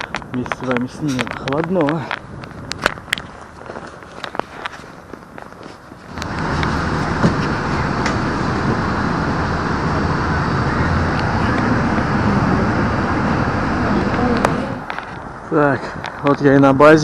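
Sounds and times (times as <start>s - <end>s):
road noise: 0.0s - 17.0s
vehicle engine rumble: 6.0s - 16.2s.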